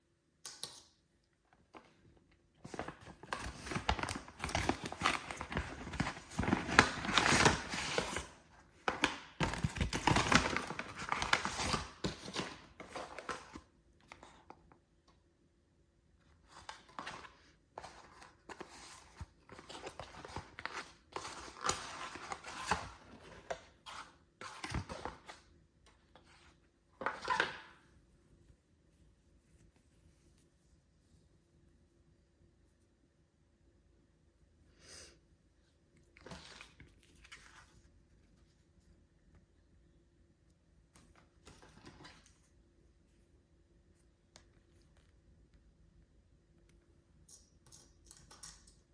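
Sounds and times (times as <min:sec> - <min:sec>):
paper and card rustling tearing: 0:02.7 - 0:08.4.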